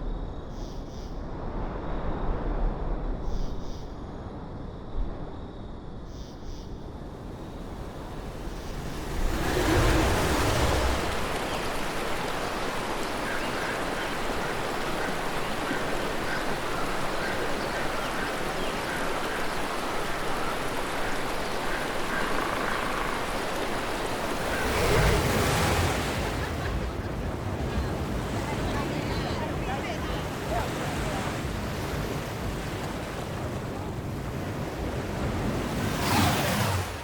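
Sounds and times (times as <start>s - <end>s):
ocean surf: 7.1s - 37.0s.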